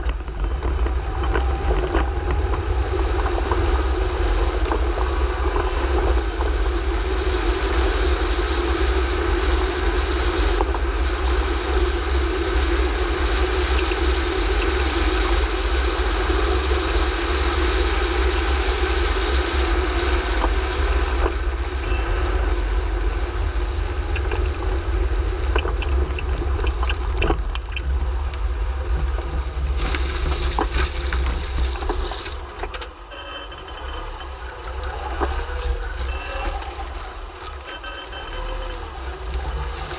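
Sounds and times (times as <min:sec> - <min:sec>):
car road noise deep rumble: 0:00.0 - 0:39.9.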